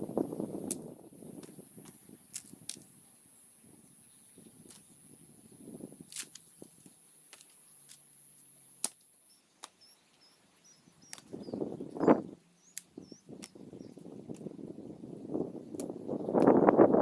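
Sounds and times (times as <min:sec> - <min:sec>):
leaves and brush rustling: 0:00.0 - 0:17.0
dry twigs snapping: 0:00.6 - 0:02.9, 0:04.6 - 0:04.9, 0:06.0 - 0:08.1, 0:08.8 - 0:09.8, 0:11.0 - 0:11.4, 0:12.7 - 0:14.5, 0:15.7 - 0:16.6
faint high chirps: 0:03.4 - 0:16.6.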